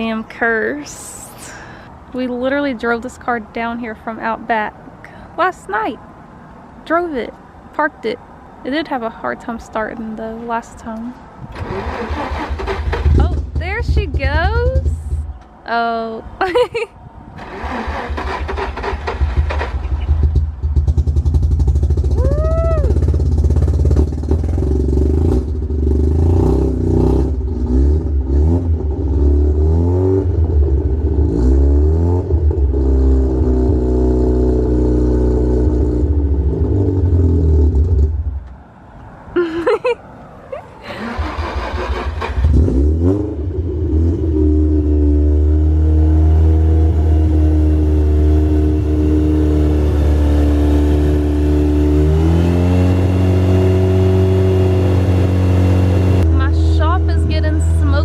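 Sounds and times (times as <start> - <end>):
car engine revving: 11.5 - 15.4, 17.4 - 38.5, 40.4 - 58.0.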